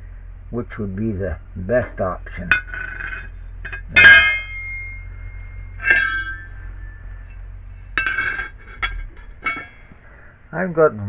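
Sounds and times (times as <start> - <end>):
steel pieces clanging on metal: 2.3 - 10.2.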